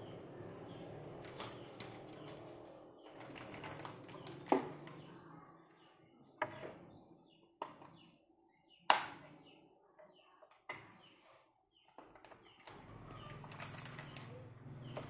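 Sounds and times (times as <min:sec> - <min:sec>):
hard parts knocking and clicking: 0:01.2 - 0:05.1.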